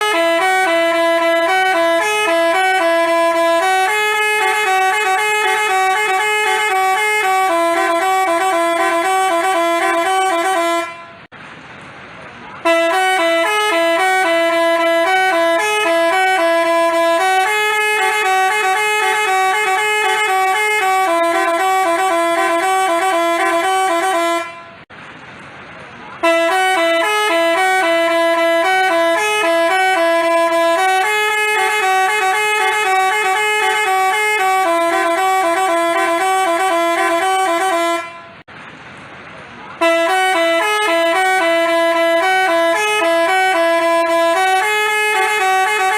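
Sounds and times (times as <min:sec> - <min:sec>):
multi-tone bus horn playing a tune: 0:00.0 - 0:11.3, 0:12.5 - 0:24.9, 0:26.2 - 0:38.5, 0:39.8 - 0:45.9.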